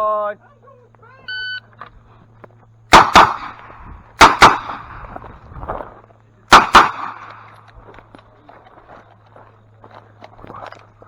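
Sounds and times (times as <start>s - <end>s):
revolver shots: 2.9s - 5.2s.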